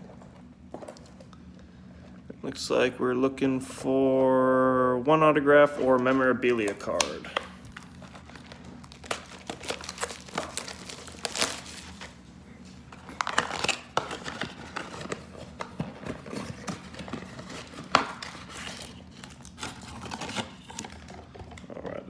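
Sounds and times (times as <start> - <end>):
foil packs crinkling: 5.6 - 22.0.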